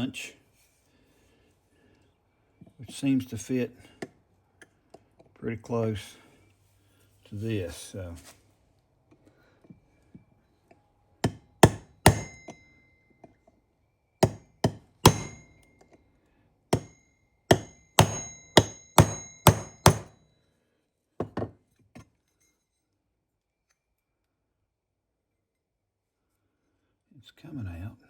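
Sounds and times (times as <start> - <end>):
hammer striking metal punch: 11.2 - 12.7, 14.2 - 15.8, 16.8 - 20.2.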